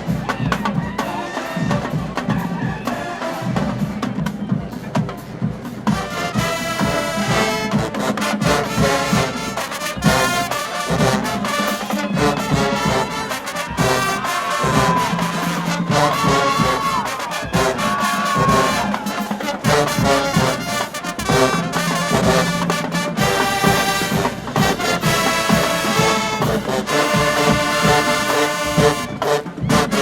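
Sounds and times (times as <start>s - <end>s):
brass section playing loud: 0.0s - 4.1s, 5.8s - 30.0s
bass drums: 12.1s - 30.0s.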